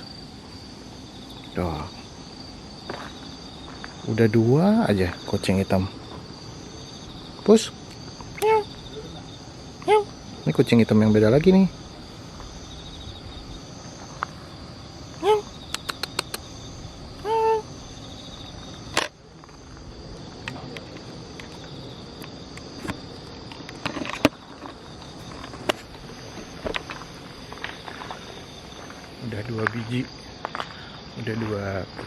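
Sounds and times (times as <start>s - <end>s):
crickets chirring: 0.0s - 32.0s.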